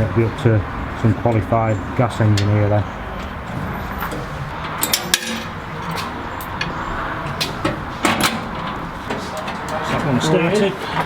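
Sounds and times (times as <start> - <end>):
steady background noise: 0.0 - 11.0
metallic clinks and knocks of tools: 4.8 - 6.1.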